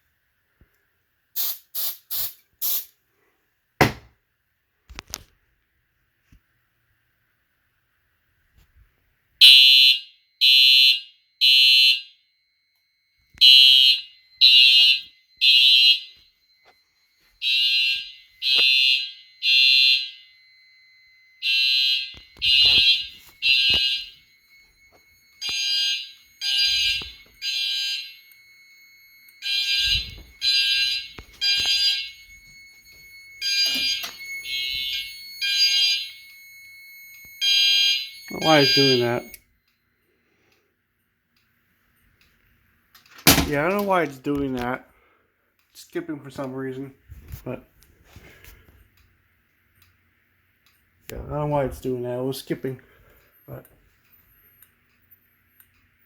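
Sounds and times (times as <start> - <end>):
fire alarm horn blasts: 9.4 - 39.7.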